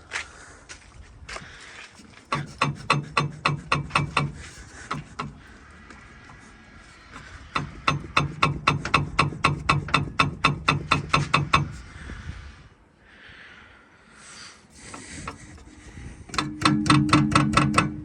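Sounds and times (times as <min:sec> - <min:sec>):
rapid mechanical clicking: 0:02.3 - 0:06.4, 0:07.1 - 0:11.8, 0:14.8 - 0:18.0.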